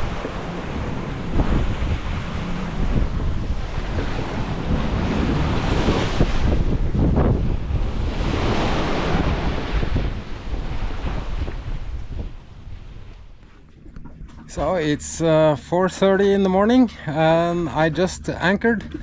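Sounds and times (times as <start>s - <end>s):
water rushing past hull: 0.0s - 13.4s
wind buffeting microphone: 0.0s - 19.0s.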